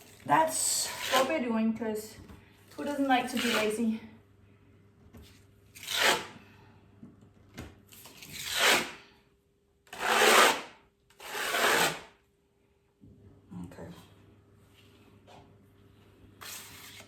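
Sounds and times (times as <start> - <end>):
drywall knife scraping compound: 0.5 - 1.3, 3.2 - 3.8, 5.7 - 6.4, 8.0 - 9.1, 9.9 - 12.2, 16.4 - 17.0.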